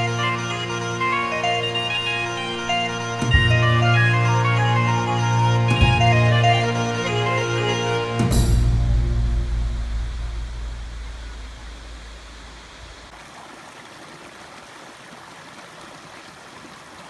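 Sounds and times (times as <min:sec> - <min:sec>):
deep low music note: 0:08.4 - 0:13.1
waterfall rushing: 0:13.1 - 0:17.0.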